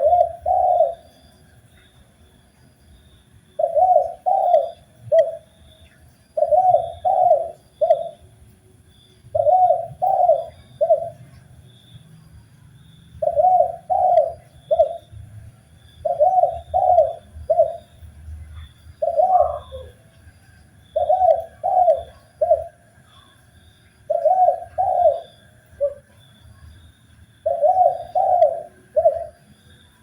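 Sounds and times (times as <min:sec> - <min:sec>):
dove cooing: 0:00.0 - 0:01.2, 0:03.6 - 0:05.5, 0:06.4 - 0:08.3, 0:09.3 - 0:11.4, 0:13.2 - 0:15.4, 0:16.0 - 0:20.1, 0:20.9 - 0:23.4, 0:24.1 - 0:26.2, 0:27.4 - 0:29.5
faint high bird chirps: 0:00.0 - 0:30.0.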